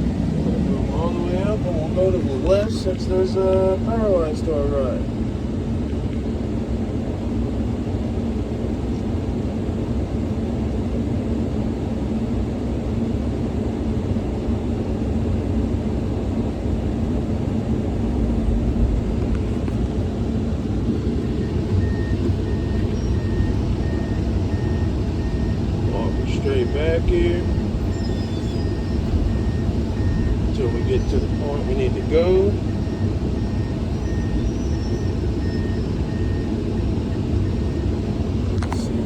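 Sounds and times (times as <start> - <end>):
excavator diesel engine running: 0.0 - 5.4, 16.3 - 39.0
faint repeating beep: 21.3 - 37.8.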